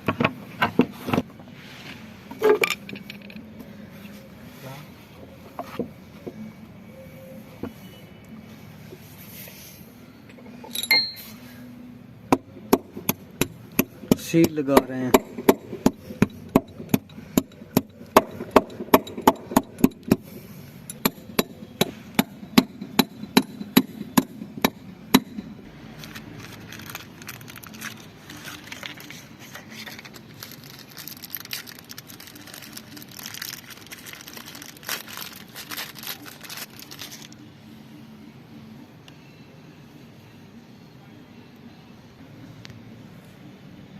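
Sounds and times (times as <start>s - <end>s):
tools clattering and scraping: 0.1s - 3.6s, 10.3s - 11.5s
hammer tapping on metal: 12.3s - 20.2s, 20.9s - 25.6s.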